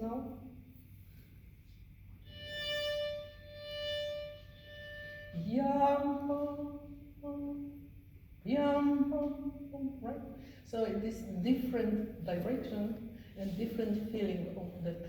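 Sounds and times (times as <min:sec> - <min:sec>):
solo violin playing: 0:02.2 - 0:06.2.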